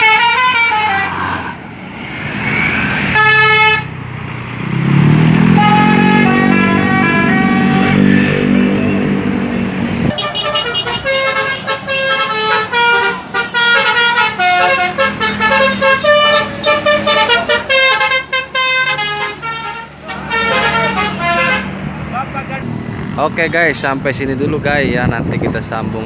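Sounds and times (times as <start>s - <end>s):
multi-tone musical air horn: 0.0s - 1.4s, 3.1s - 3.9s, 5.5s - 8.5s, 10.1s - 21.7s
bus engine running: 0.0s - 26.0s.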